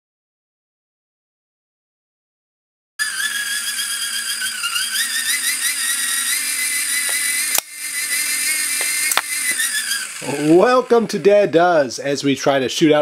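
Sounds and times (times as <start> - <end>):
toy electric motor whine: 3.0 - 11.6
sharp click: 7.0 - 7.8, 8.7 - 9.7.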